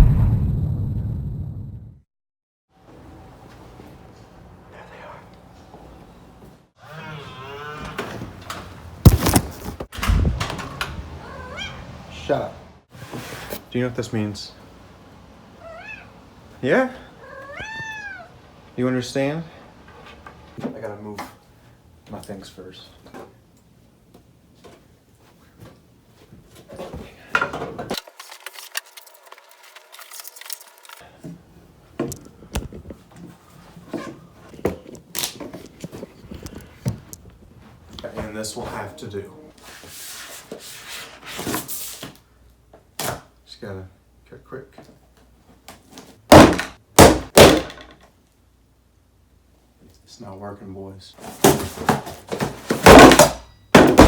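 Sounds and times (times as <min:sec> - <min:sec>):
loud thumps: 0:09.0 - 0:10.6
cat meowing: 0:11.2 - 0:11.9, 0:15.6 - 0:16.1, 0:17.2 - 0:18.3.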